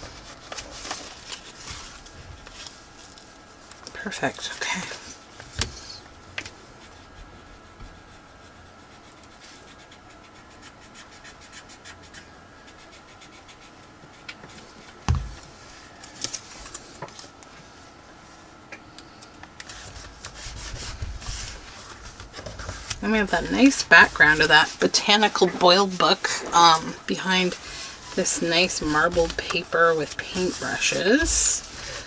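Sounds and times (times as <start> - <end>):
paper rubbing and scratching: 19.7 - 32.0.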